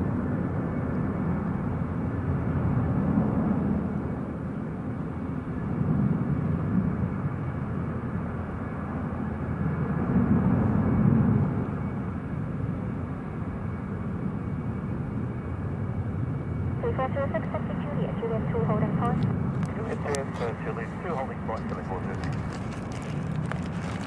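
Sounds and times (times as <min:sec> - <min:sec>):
distant jet engines rumbling: 0:16.6 - 0:24.0.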